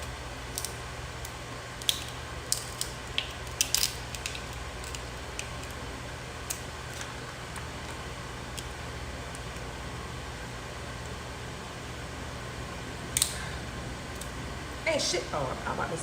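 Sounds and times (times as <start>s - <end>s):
crab shells cracking: 0.0s - 5.8s, 6.4s - 9.8s
steady low hum: 0.0s - 16.0s.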